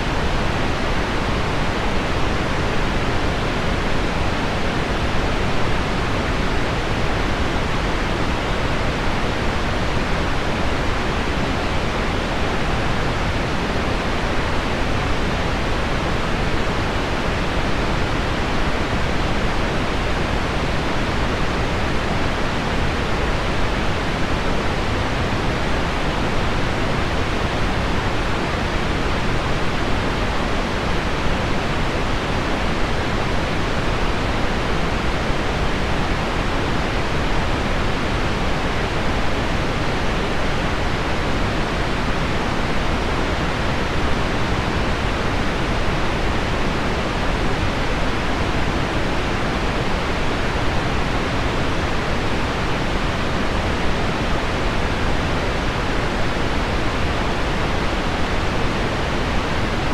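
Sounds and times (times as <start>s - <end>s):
pink noise: 0.0s - 59.9s.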